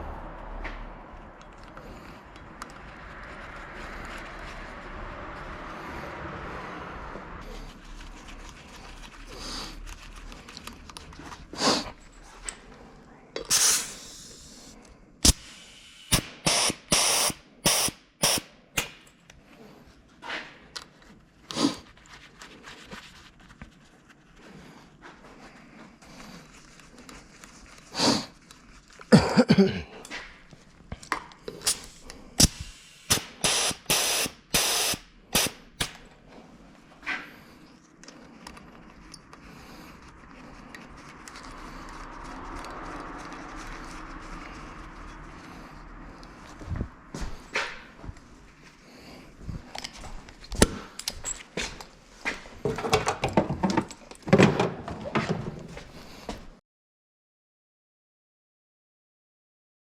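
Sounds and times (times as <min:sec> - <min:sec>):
short hissing bursts: 0:13.5 - 0:18.5, 0:31.7 - 0:35.9.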